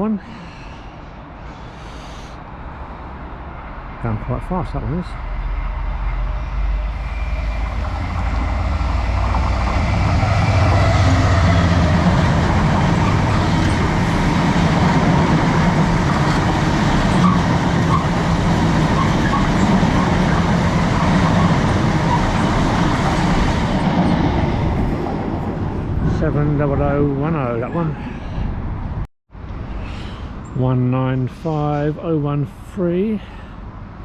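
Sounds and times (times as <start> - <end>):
diesel locomotive engine: 0.0 - 34.0
wheels on rails: 5.4 - 25.6.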